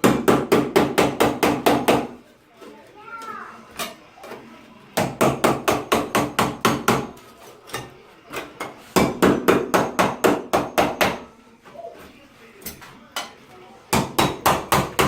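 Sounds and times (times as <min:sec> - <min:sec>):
rapid hammering: 0:00.0 - 0:02.2, 0:05.0 - 0:07.1, 0:09.0 - 0:11.2, 0:13.9 - 0:15.0.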